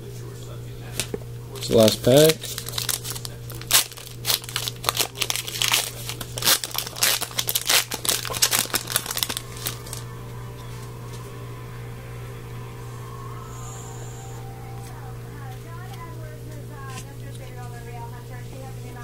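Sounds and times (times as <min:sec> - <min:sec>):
foil wrapper tearing and crinkling: 0:01.6 - 0:10.0
low hum: 0:02.2 - 0:19.0.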